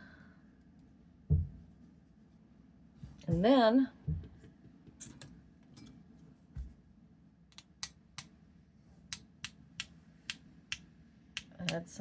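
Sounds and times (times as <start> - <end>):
soft thump: 1.3 - 1.6.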